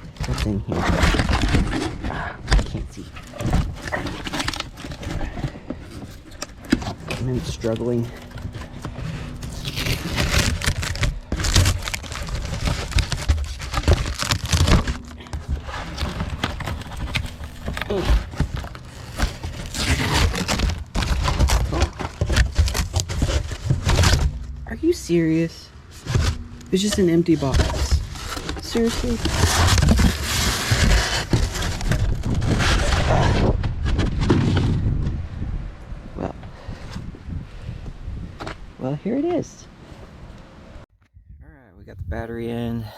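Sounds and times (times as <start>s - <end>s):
packaging crinkling and rustling: 0.0s - 25.0s, 25.9s - 34.6s
wind rumbling on microphone: 27.8s - 39.0s, 39.6s - 42.5s.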